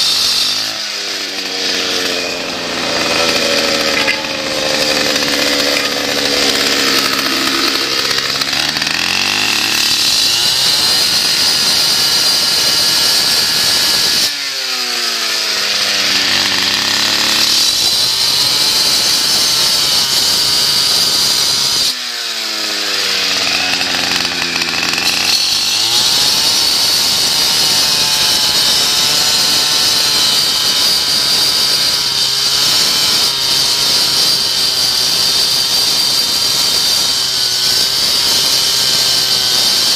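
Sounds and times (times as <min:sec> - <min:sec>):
high whine from saw blade: 0:00.0 - 0:12.2
saw engine running under load: 0:00.6 - 0:14.3, 0:22.6 - 0:30.3.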